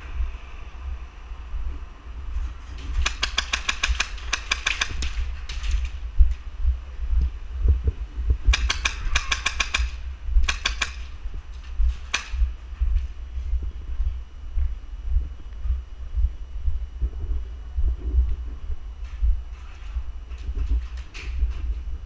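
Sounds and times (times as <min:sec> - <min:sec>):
low rumble with thumps: 0:00.0 - 0:03.3, 0:04.0 - 0:22.0
airsoft guns firing: 0:02.9 - 0:06.0, 0:08.5 - 0:11.1.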